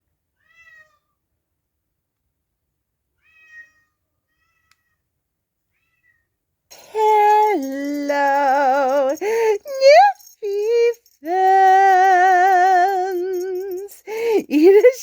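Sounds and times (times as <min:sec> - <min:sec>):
cat meowing: 0:00.4 - 0:01.1, 0:03.2 - 0:05.0.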